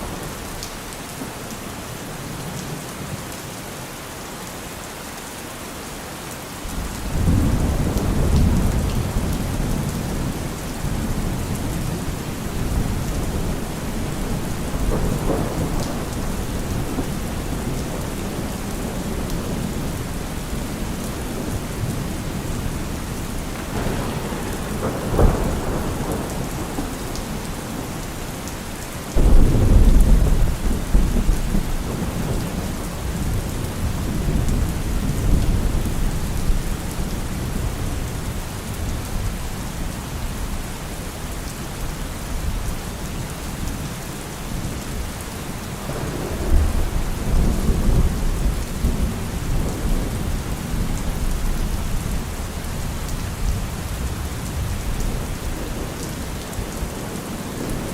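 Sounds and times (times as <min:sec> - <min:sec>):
heavy rain hissing: 0:04.2 - 0:57.9
thunder rumbling: 0:06.7 - 0:39.4, 0:45.7 - 0:57.9.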